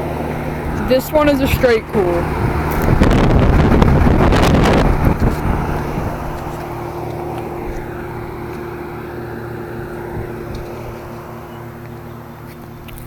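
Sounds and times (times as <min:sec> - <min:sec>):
air conditioner unit humming: 0:00.0 - 0:13.0
rush of air: 0:02.2 - 0:08.5.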